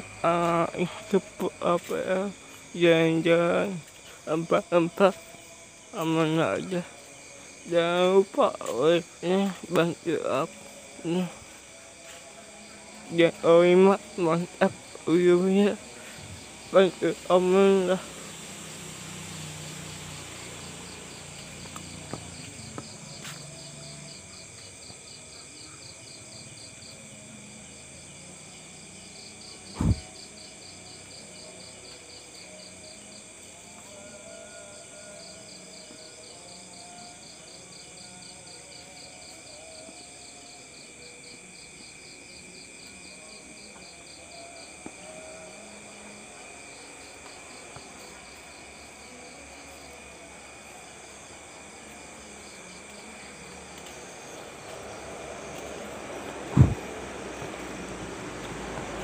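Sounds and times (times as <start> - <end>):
crickets chirping: 0.0 - 59.0
high fast-pulsing insect trill: 0.0 - 59.0
loud dull thump: 29.8 - 30.1, 56.5 - 56.8.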